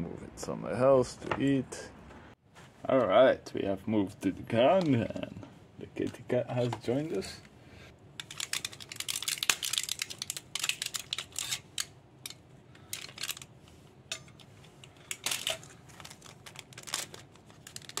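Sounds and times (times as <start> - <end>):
packaging crinkling and clicking: 8.2 - 13.5, 14.8 - 18.0.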